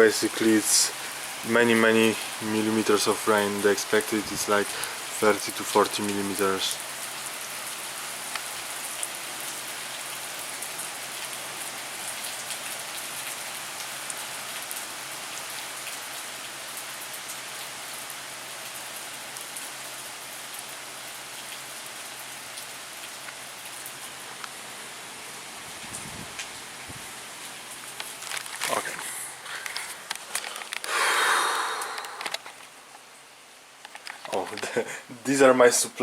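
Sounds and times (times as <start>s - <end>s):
heavy rain downpour: 0.0s - 36.0s
raindrop ticks: 1.4s - 6.8s, 8.3s - 9.1s, 22.6s - 24.6s, 27.8s - 33.1s, 33.8s - 35.0s.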